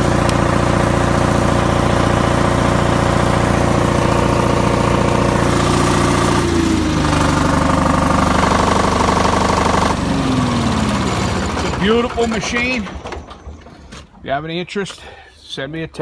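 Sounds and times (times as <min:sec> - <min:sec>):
diesel generator running: 0:00.0 - 0:15.4.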